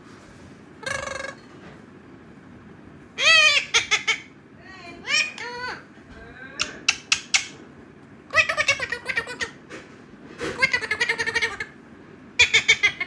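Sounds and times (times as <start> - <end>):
parrot calling: 0.8 - 1.4, 3.2 - 4.4, 5.0 - 5.9, 6.6 - 7.6, 8.3 - 9.6, 10.6 - 11.8, 12.4 - 13.0.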